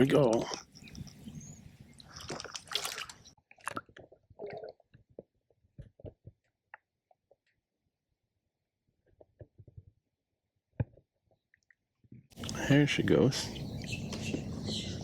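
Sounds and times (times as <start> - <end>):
squelches: 0.0 - 3.3, 12.4 - 15.0.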